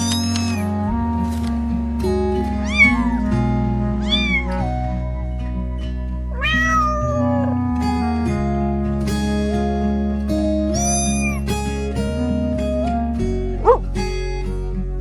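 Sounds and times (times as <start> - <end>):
cat meowing: 0.0 - 0.6, 2.6 - 3.2, 4.0 - 4.6, 6.3 - 7.6, 10.7 - 11.5
music with held notes: 0.0 - 15.0.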